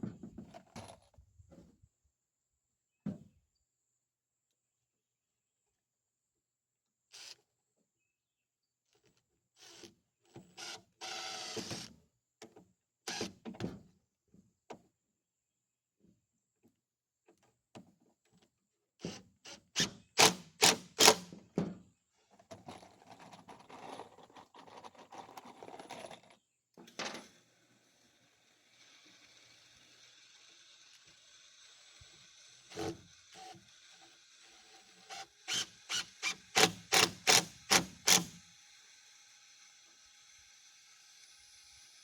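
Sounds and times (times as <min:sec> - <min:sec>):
wood scraping: 0:22.4 - 0:26.4.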